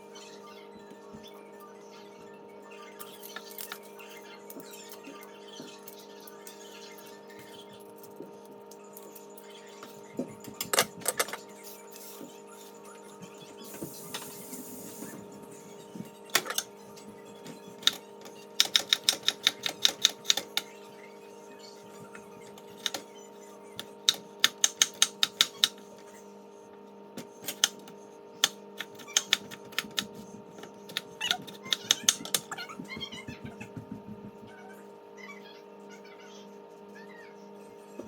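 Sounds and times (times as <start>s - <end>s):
steady hum: 13.1s - 34.6s.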